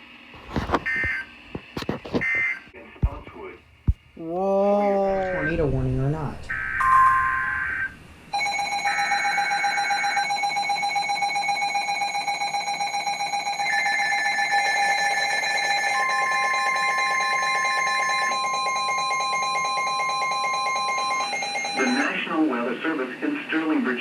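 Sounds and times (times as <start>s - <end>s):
pulsing electronic alarm tones: 6.4s - 22.1s.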